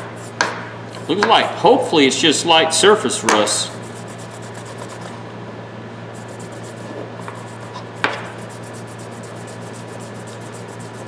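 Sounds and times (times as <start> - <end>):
cloth rubbing on metal pliers: 6.2 - 11.0.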